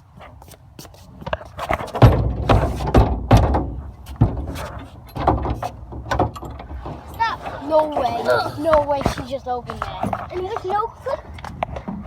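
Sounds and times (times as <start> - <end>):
door rattling and banging: 1.9 - 7.4.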